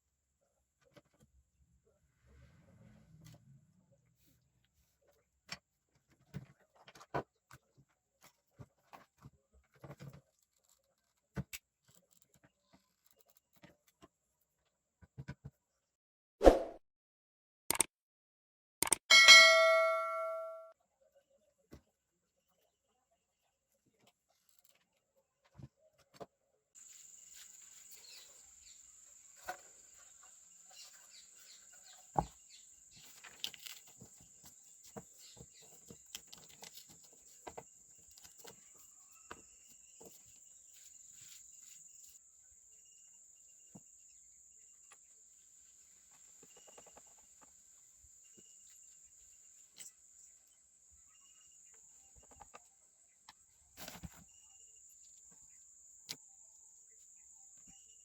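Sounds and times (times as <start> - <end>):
small objects clicking and tapping: 18.8 - 19.1.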